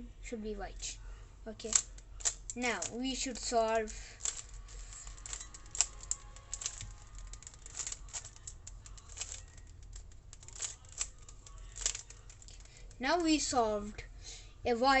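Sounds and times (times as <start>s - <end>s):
puzzle cube clicking as twisted: 1.6s - 13.4s.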